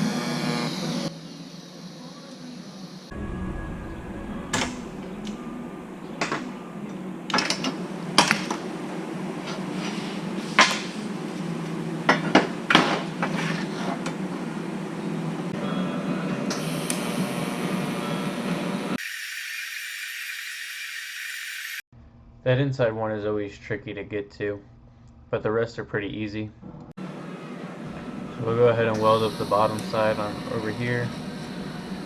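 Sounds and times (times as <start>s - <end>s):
welding machine hum: 19.0s - 21.8s
welding torch hiss: 19.0s - 21.8s.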